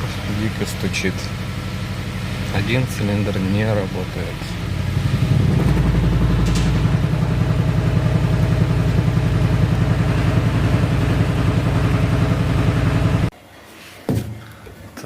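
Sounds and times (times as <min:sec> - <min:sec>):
misfiring car engine knocking: 0:04.7 - 0:13.3.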